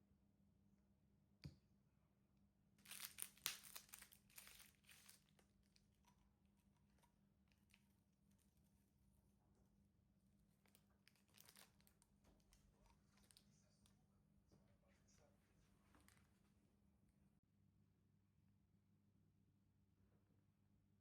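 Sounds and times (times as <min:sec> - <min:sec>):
crinkling and tearing: 0:02.8 - 0:06.1, 0:10.5 - 0:13.5.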